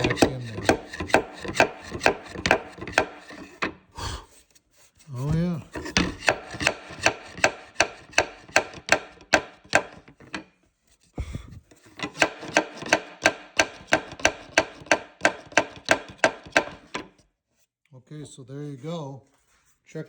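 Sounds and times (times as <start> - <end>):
hammer tapping nail into wood: 0.0 - 3.7, 5.3 - 10.4, 12.0 - 17.1.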